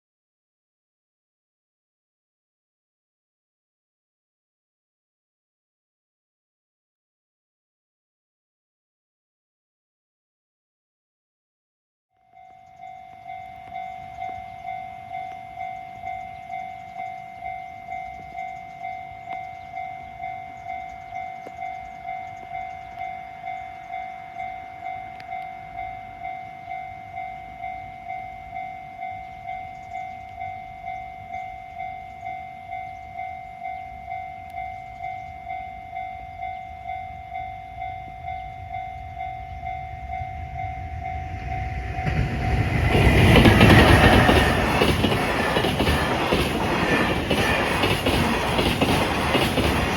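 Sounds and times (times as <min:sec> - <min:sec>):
train approaching: 0:12.2 - 0:49.9.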